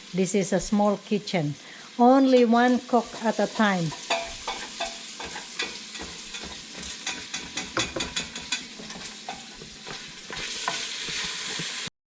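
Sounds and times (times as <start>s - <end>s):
butter and flour sizzling: 0.0s - 11.9s
utensil scraping in pan: 2.3s - 11.9s
utensil clicking against pan: 3.5s - 11.9s.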